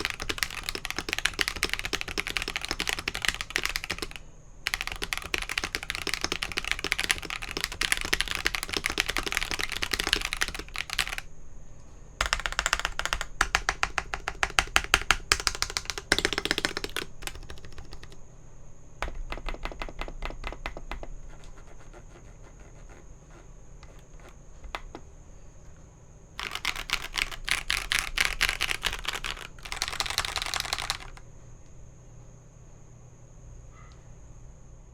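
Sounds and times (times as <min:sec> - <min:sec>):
mechanical keyboard typing: 0:00.0 - 0:11.3, 0:12.2 - 0:18.2, 0:19.0 - 0:21.9, 0:23.8 - 0:25.0, 0:26.4 - 0:31.2.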